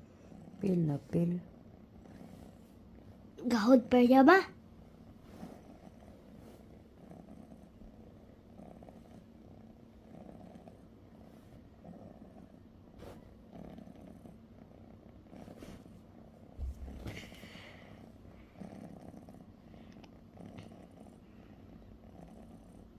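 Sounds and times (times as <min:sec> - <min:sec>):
cat purring: 0:00.0 - 0:22.9.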